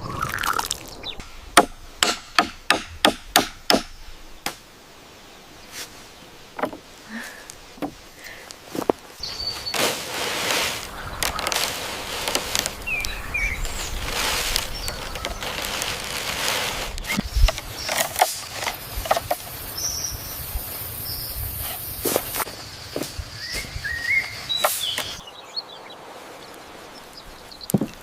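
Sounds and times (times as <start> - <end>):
rough rustling noise: 4.0 - 25.2.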